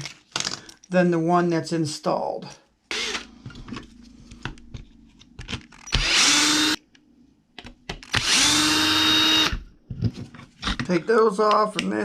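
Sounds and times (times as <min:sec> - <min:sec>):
power driver motor whine: 0:05.8 - 0:06.8, 0:08.2 - 0:09.6.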